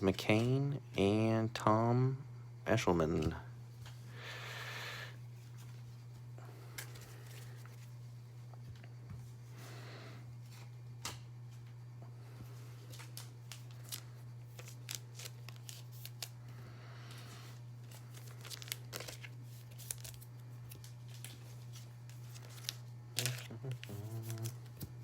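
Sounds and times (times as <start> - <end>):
low electrical hum: 0.0 - 25.0
card stock clicks and rustles: 6.6 - 8.0, 12.4 - 25.0.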